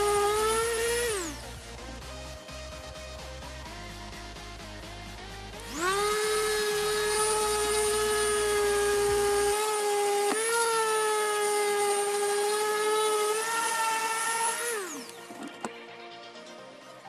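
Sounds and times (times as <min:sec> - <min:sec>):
power tool motor whining: 0:00.0 - 0:01.7, 0:05.6 - 0:15.7.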